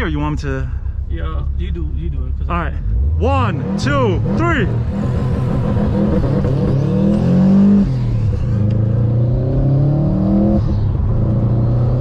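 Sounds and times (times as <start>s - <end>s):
man talking: 0.0s - 4.8s
car engine accelerating hard: 1.4s - 12.0s.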